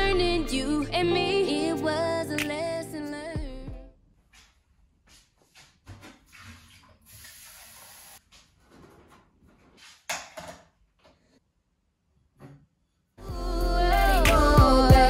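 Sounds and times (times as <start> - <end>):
steady hiss: 7.2 - 8.2.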